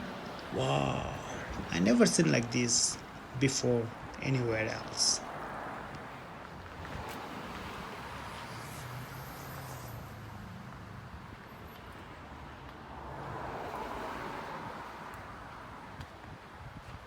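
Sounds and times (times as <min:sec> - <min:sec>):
vehicle passing: 0:00.0 - 0:11.3
traffic hum: 0:00.0 - 0:16.4.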